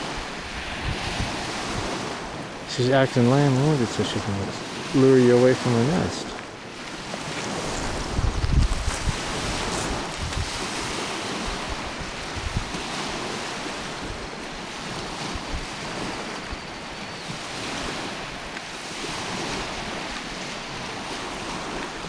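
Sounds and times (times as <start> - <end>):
small waves washing on shore: 0.0 - 22.0
wind buffeting microphone: 0.0 - 22.0
wind rushing: 7.6 - 10.7.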